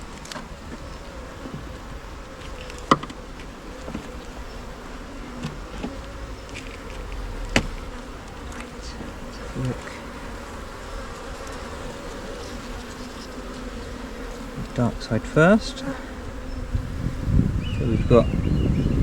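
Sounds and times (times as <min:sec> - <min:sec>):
honey bees buzzing: 0:00.0 - 0:19.0
sharp knocks: 0:02.8 - 0:03.2, 0:07.5 - 0:07.9.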